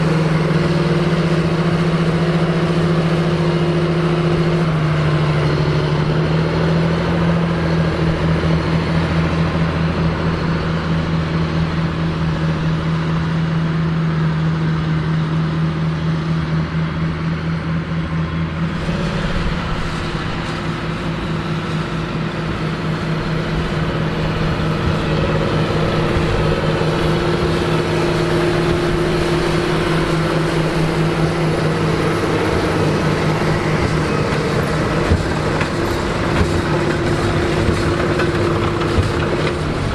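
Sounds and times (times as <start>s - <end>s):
tractor diesel engine running: 0.0s - 39.9s
baler machinery clattering: 18.3s - 39.9s.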